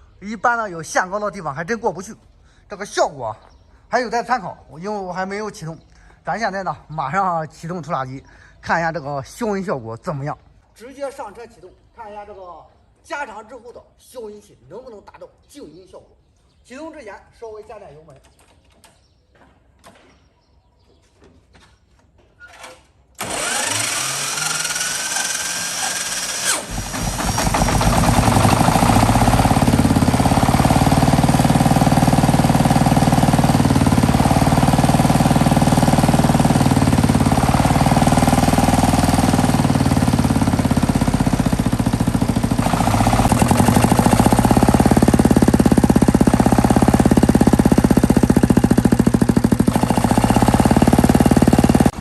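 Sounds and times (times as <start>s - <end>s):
starter motor whine: 23.2s - 52.0s
diesel tractor engine running: 26.2s - 52.0s.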